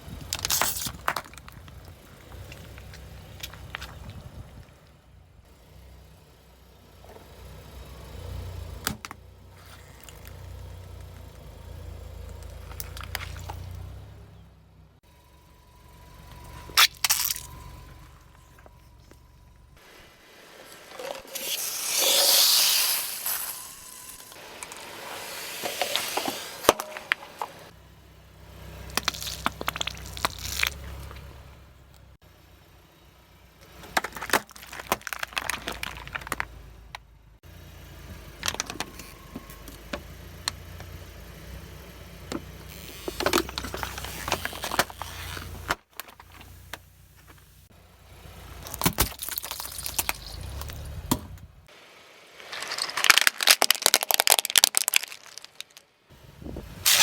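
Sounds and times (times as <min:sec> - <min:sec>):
car engine rumble: 0:00.0 - 0:21.4, 0:22.5 - 0:57.0
tyre crushing objects: 0:24.4 - 0:27.7, 0:33.9 - 0:36.5, 0:52.4 - 0:55.8.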